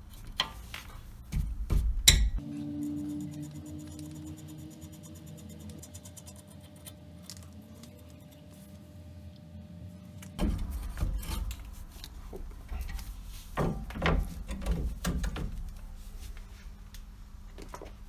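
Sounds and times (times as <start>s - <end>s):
metal parts clunking and scraping: 10.3s - 15.6s.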